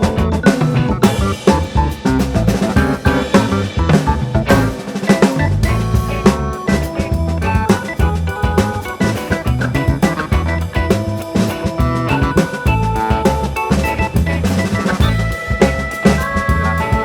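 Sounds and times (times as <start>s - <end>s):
background music with drums: 0.0s - 17.0s.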